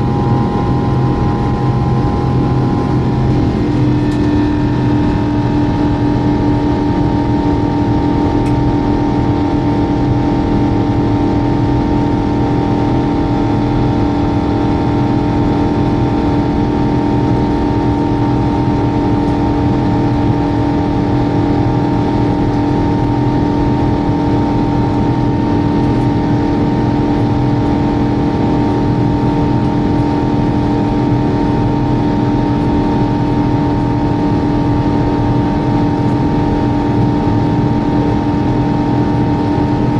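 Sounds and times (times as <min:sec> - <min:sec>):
jet engines rumbling: 0:00.0 - 0:39.9.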